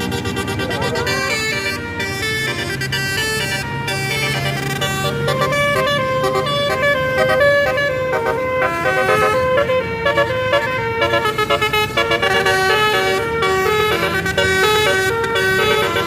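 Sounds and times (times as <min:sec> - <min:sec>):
bus air horn playing melody: 0:00.0 - 0:16.0.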